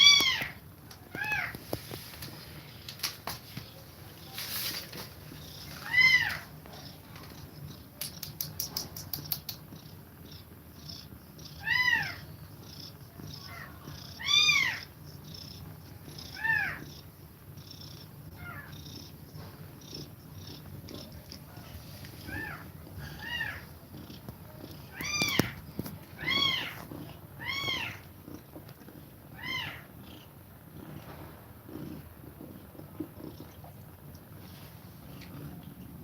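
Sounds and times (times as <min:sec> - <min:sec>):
kittens mewing: 0:05.5 - 0:19.2, 0:19.8 - 0:28.4
low purring: 0:09.5 - 0:36.0.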